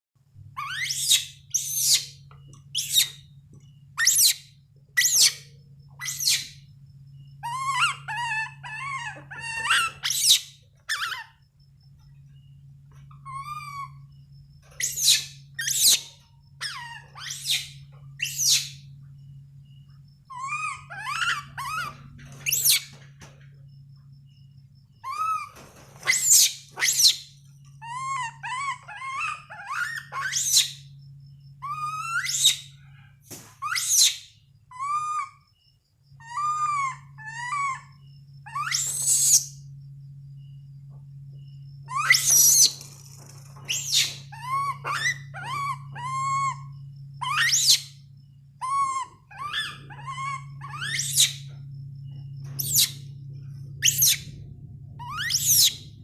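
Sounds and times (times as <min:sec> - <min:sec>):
low hum: 0:00.2 - 0:56.0
monkey whistle-like cries: 0:25.0 - 0:27.2, 0:27.9 - 0:30.8, 0:31.6 - 0:32.7, 0:33.6 - 0:35.4, 0:36.2 - 0:39.6, 0:41.9 - 0:42.8, 0:43.7 - 0:48.0, 0:48.6 - 0:51.5, 0:53.8 - 0:54.3, 0:55.0 - 0:55.8.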